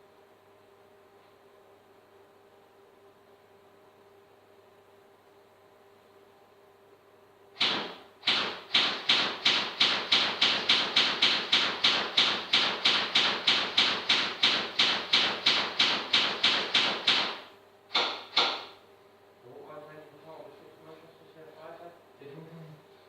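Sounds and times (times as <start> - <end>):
airsoft gun rapid firing: 7.6 - 18.8.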